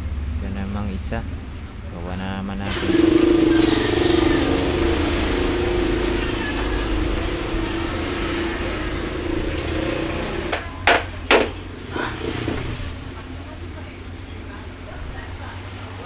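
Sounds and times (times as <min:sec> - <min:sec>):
motor running: 0:02.6 - 0:10.8.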